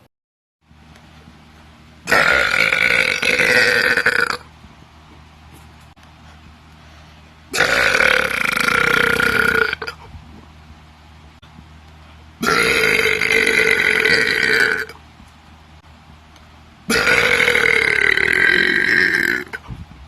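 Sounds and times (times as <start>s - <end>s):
person burping: 2.1s - 4.5s, 7.5s - 10.0s, 12.4s - 15.0s, 16.9s - 19.6s.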